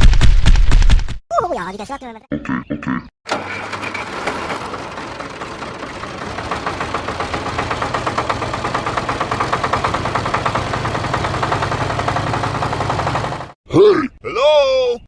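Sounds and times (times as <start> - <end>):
small engine knocking: 3.3 - 13.6.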